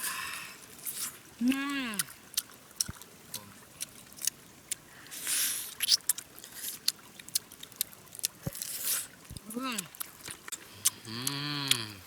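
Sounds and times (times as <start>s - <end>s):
short hissing rustle: 5.1s - 6.0s.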